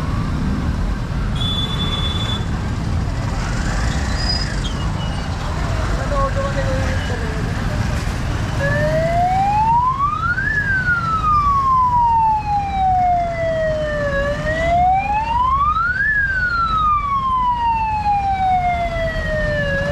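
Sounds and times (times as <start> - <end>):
electronic vehicle siren wailing: 8.6 - 19.9.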